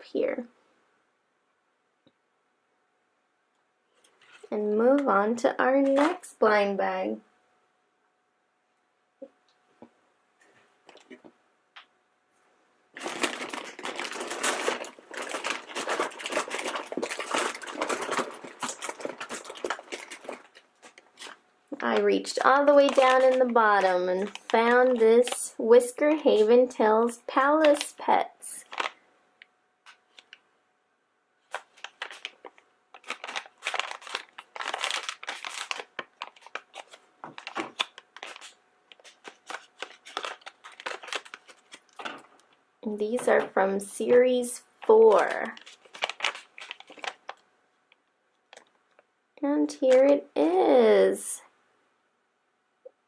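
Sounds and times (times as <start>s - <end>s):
plastic packets crinkling: 5.8s - 6.4s, 12.9s - 30.5s, 31.4s - 49.1s.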